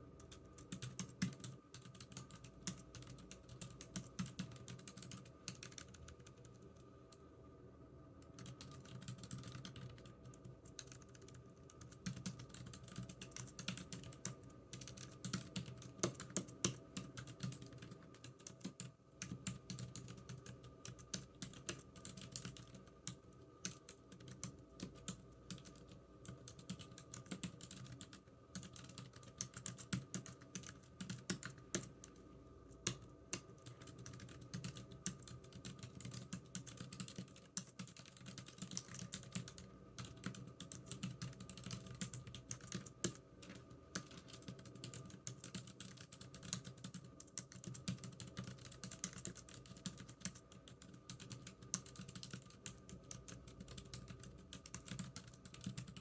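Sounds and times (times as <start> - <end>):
computer keyboard typing: 0.2 - 7.2, 8.2 - 56.0.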